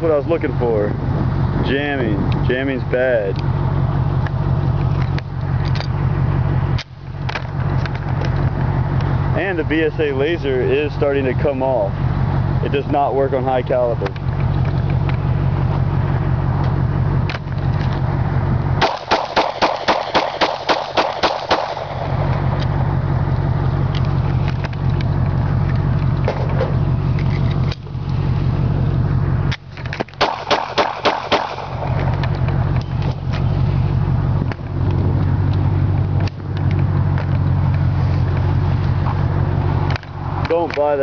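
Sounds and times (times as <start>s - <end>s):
low engine hum: 0.0s - 41.0s
rapid pistol shots: 18.8s - 22.2s, 30.2s - 32.0s.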